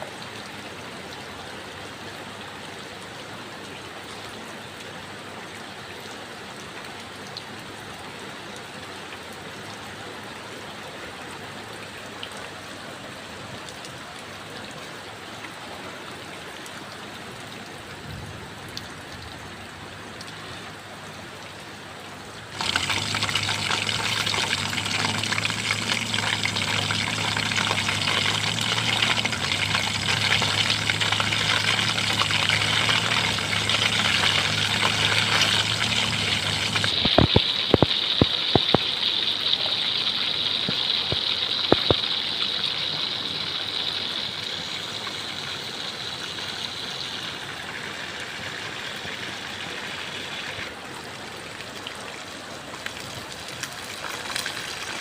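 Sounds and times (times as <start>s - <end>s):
falling and running water: 0.0s - 55.0s
low steady hum: 21.4s - 38.9s.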